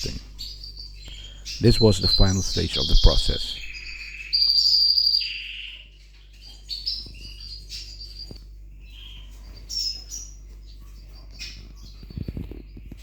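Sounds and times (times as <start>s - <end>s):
faint low hum: 0.0s - 5.0s
canaries chirping: 0.0s - 12.2s.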